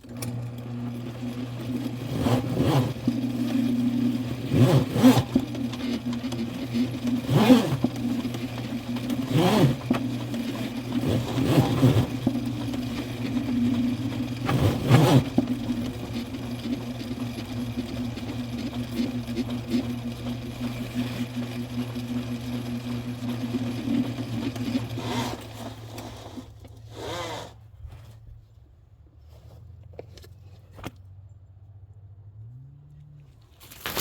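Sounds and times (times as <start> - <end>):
drain-cleaning machine motor running: 0.0 - 26.5.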